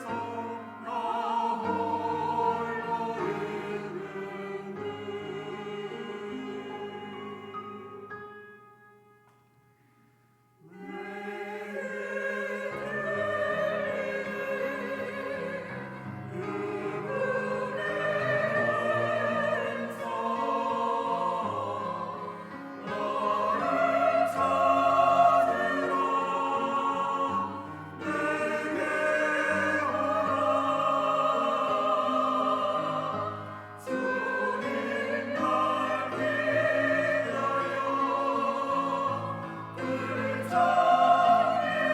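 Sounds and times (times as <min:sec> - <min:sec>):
church choir singing: 0:00.0 - 0:09.0, 0:10.6 - 0:41.9.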